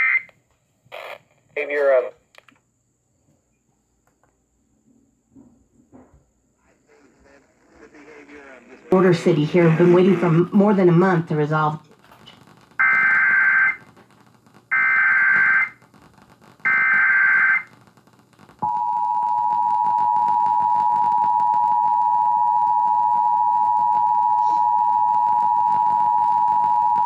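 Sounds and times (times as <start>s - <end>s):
digital data bursts: 6.9s - 13.9s
two-tone attention signal: 18.6s - 27.0s.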